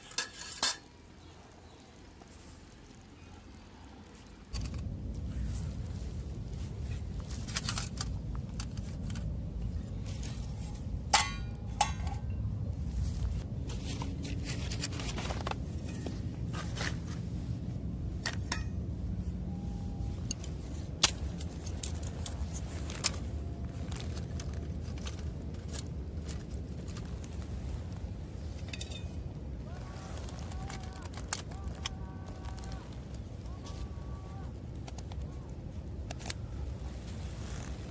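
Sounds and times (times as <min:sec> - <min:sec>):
steady low rumble: 0:01.1 - 0:37.9
metal camp gear clinking: 0:06.8 - 0:12.5, 0:18.2 - 0:18.8, 0:20.3 - 0:27.4, 0:28.5 - 0:29.3.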